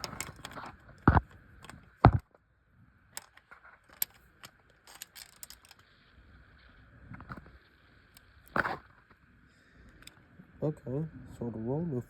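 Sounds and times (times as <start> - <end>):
metallic clicks and clinks: 0.0 - 0.8, 3.2 - 5.9.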